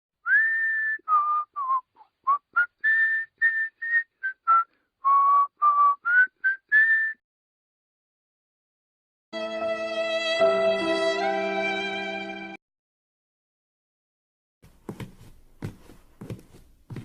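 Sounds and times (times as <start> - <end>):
whistled tune: 0.2 - 7.2.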